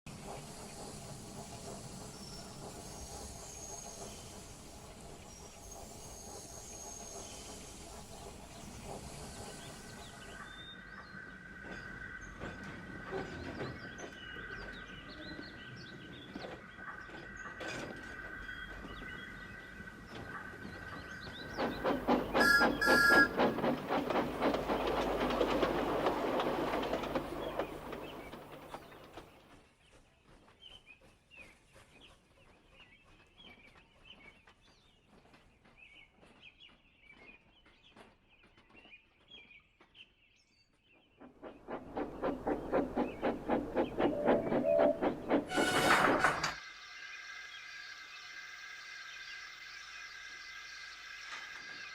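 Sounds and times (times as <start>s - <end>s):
steam engine chuffing: 0.1s - 15.6s, 20.9s - 29.4s, 41.2s - 46.6s
steam locomotive whistle: 22.3s - 23.5s, 44.1s - 46.6s.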